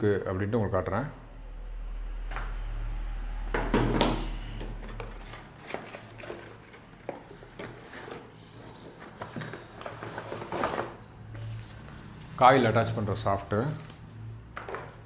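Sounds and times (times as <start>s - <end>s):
low hum: 0.8s - 5.6s
packaging rustling: 4.6s - 12.7s.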